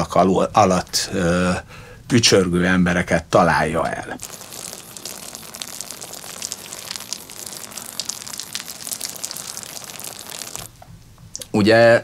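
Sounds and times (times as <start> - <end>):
water splashing onto leather: 4.2 - 10.8.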